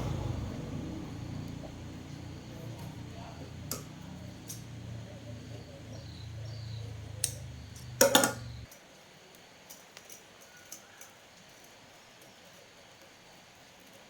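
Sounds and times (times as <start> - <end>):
low electric hum: 0.0 - 8.7
metallic clattering: 6.2 - 8.7.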